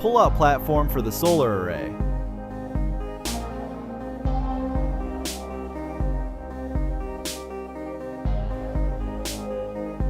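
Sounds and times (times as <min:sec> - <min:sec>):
electronic music with steady beat: 0:00.2 - 0:10.0
cymbal-like swell: 0:03.1 - 0:09.5.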